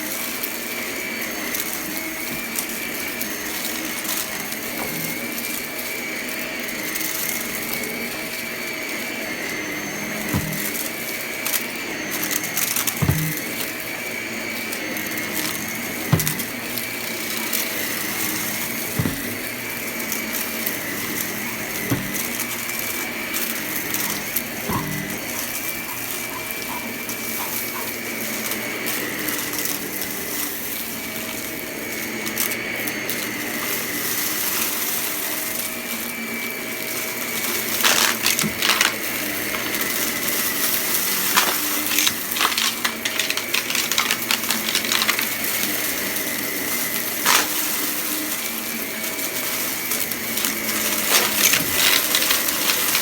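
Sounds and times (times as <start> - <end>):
vacuum cleaner whine: 0.0 - 53.0
debris rattling through vacuum: 9.0 - 29.1, 37.2 - 53.0.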